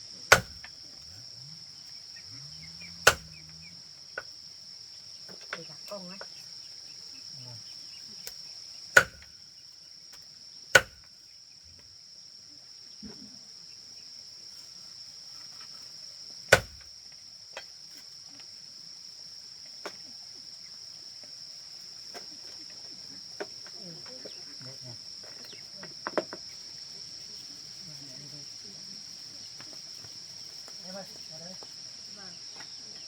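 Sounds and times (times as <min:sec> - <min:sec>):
crickets droning: 0:00.0 - 0:33.0
cleaver chopping chicken: 0:00.3 - 0:00.7, 0:03.1 - 0:03.4, 0:09.0 - 0:09.2, 0:10.8 - 0:11.0, 0:16.5 - 0:16.8.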